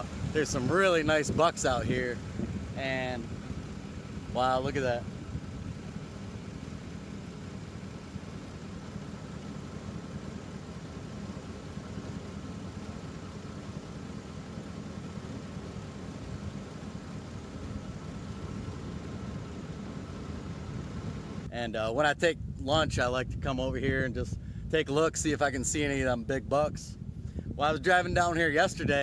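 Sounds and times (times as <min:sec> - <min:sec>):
vehicle engine idling: 0:00.0 - 0:22.6.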